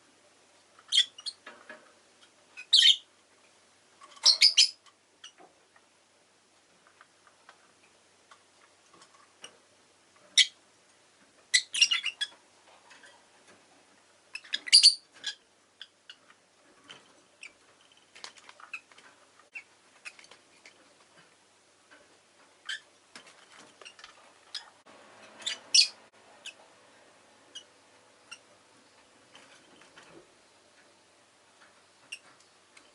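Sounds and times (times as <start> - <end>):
lovebirds chirping: 0.8 - 1.4, 2.5 - 3.1, 4.1 - 5.4, 10.4 - 10.6, 11.5 - 12.4, 14.2 - 20.3, 22.6 - 26.7, 27.4 - 30.0.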